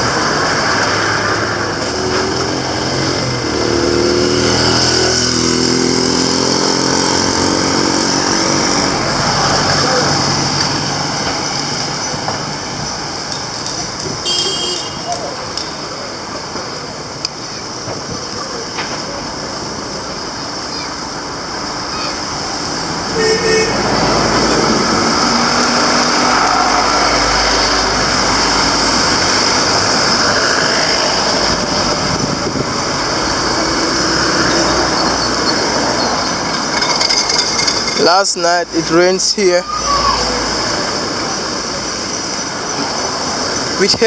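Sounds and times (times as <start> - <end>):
large vehicle passing: 0.0 - 14.2, 22.3 - 44.0
vehicle horn toot: 14.2 - 15.3, 23.1 - 23.9.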